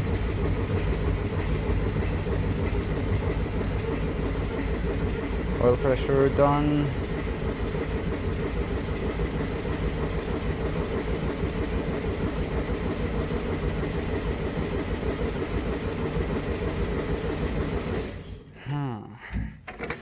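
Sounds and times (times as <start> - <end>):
engine cranking without starting: 0.0 - 9.0.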